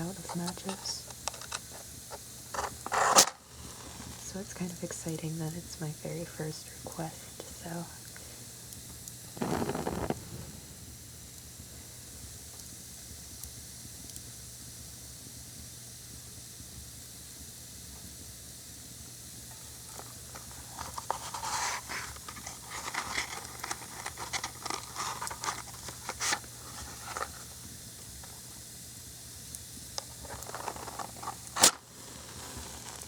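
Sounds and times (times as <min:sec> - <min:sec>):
matches struck and crackling: 0:00.0 - 0:04.2, 0:08.7 - 0:11.5, 0:19.7 - 0:28.6, 0:29.4 - 0:33.0
faint steady hiss: 0:00.0 - 0:33.0.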